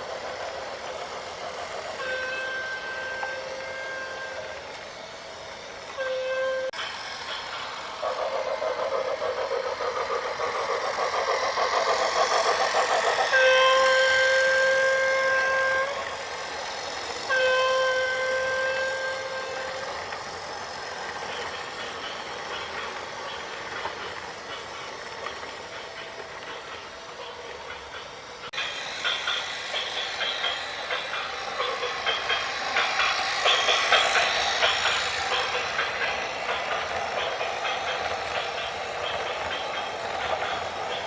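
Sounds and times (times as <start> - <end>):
rapid pulsing mechanical rattle: 6.8 - 15.2, 19.4 - 41.0.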